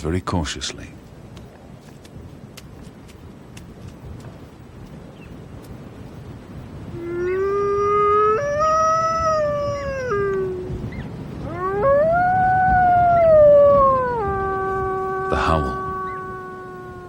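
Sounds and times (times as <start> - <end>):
wolf howling: 6.9 - 17.0.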